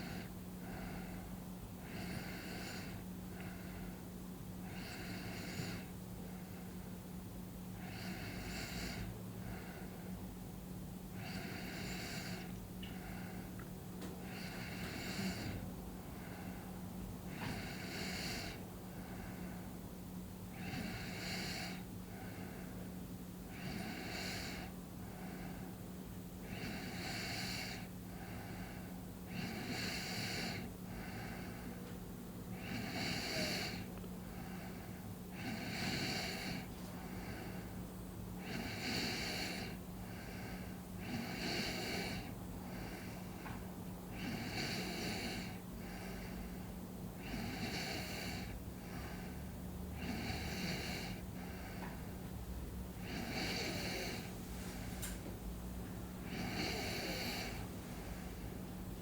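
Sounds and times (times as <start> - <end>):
person snoring softly: 0.0 - 1.2, 1.8 - 3.9, 4.6 - 5.9, 7.8 - 10.0, 11.2 - 13.5, 14.2 - 16.6, 17.3 - 19.6, 20.5 - 22.7, 23.5 - 25.6, 26.4 - 31.8, 32.5 - 37.7, 38.4 - 52.0, 53.0 - 55.2, 56.2 - 58.5
steady low hum: 0.0 - 59.0.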